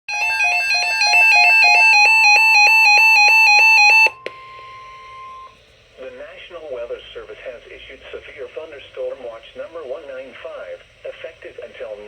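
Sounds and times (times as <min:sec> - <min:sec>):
two-pitch warbling alert tone: 0:00.1 - 0:04.2.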